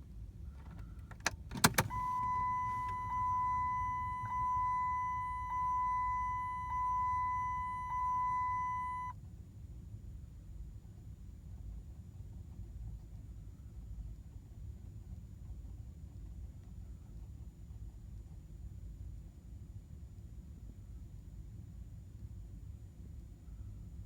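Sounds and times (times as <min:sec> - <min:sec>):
car warning chime: 0:01.6 - 0:09.1.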